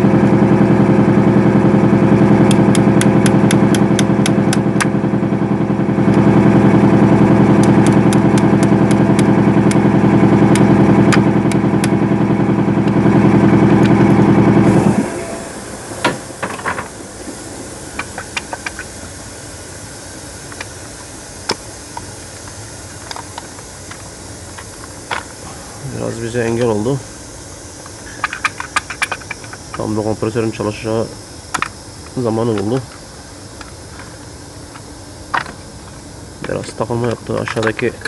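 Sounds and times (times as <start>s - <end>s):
air compressor running: 0.0s - 38.0s
regular ticking: 2.4s - 14.6s.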